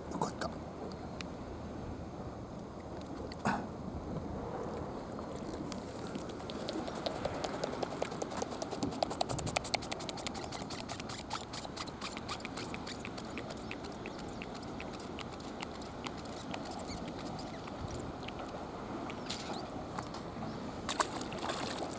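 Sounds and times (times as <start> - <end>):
pufferfish grinding teeth clicks: 6.0 - 19.6.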